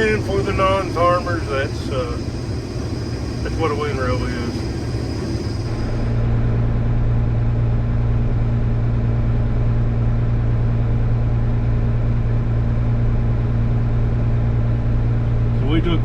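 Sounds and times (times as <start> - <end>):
steady hum: 0.0 - 6.6
combine harvester engine drone: 0.0 - 16.0.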